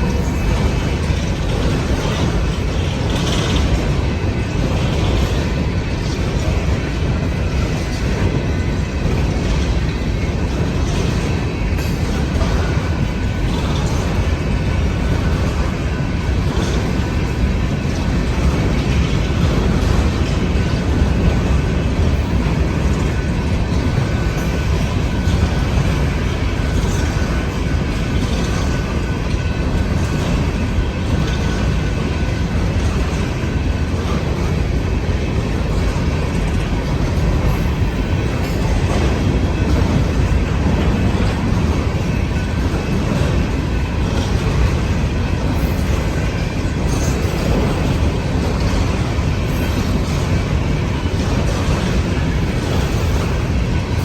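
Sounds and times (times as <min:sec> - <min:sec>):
slowed train deep rumble: 0:00.0 - 0:54.0.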